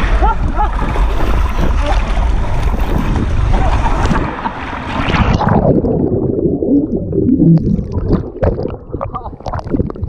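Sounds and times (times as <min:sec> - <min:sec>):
water and air rushing: 0:00.0 - 0:10.0
muffled underwater gurgling: 0:05.0 - 0:10.0.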